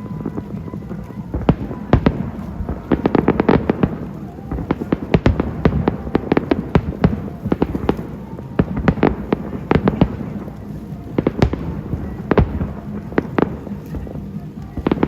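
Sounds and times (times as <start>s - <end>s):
fireworks bangs and pops: 0.0s - 15.0s
rumble of distant bursts: 0.0s - 15.0s.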